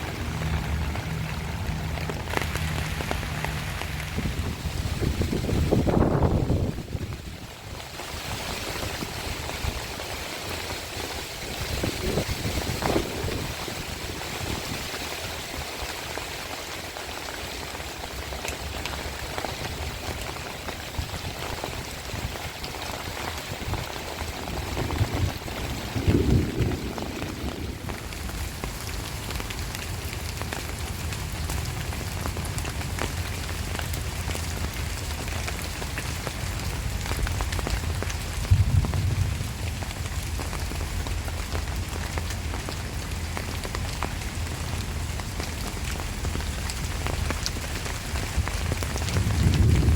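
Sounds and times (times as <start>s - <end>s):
low rumbling: 0.0s - 7.2s, 23.5s - 30.0s, 37.3s - 41.2s, 44.6s - 49.9s
heavy rain pouring: 0.0s - 49.9s.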